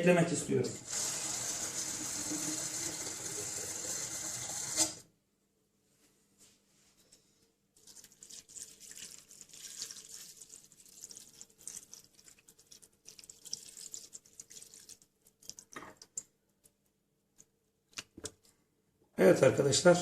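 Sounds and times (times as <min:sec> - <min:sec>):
water pouring into a pot: 0:00.7 - 0:05.0, 0:07.8 - 0:16.3.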